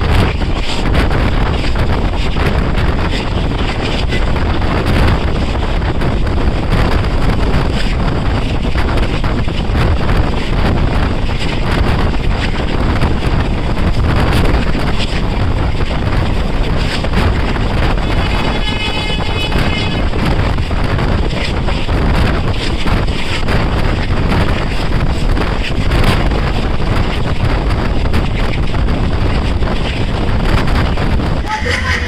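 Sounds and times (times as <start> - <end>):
train wheels on rails: 0.0 - 32.0
wind buffeting microphone: 0.0 - 32.0
short high-pitched tone: 31.4 - 32.0.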